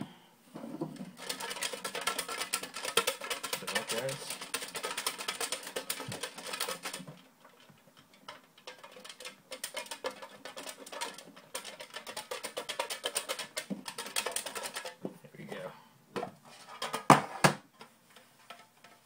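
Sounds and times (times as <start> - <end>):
paper slips rattling in a box: 1.1 - 15.0.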